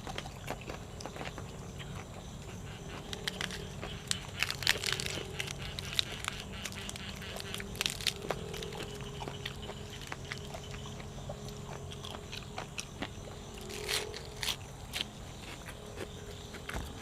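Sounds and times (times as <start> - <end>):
person chewing and crunching food: 0.0 - 17.0
steady low hum: 0.0 - 17.0
sharp crackly clicks: 2.9 - 10.8.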